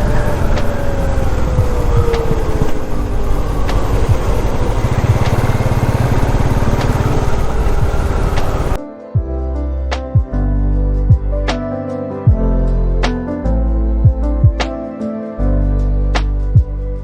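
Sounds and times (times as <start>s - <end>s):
motorcycle engine running: 0.0s - 8.8s
heavy wind noise: 0.0s - 9.4s.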